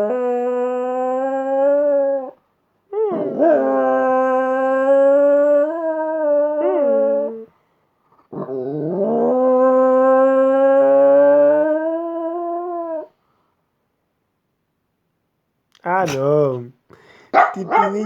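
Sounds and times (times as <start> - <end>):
dog howling: 0.0 - 7.5, 8.4 - 13.1.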